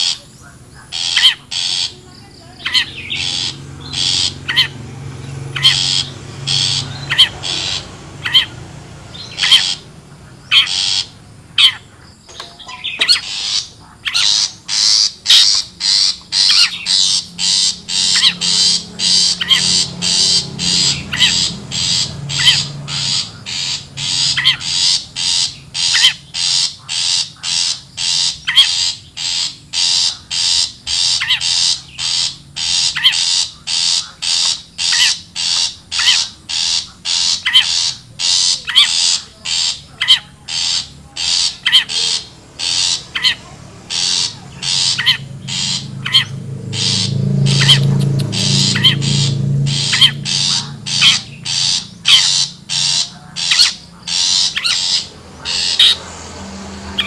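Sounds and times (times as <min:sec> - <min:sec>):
harsh rasping bird calls: 0:00.0 - 0:57.0
low hum: 0:40.8 - 0:57.0.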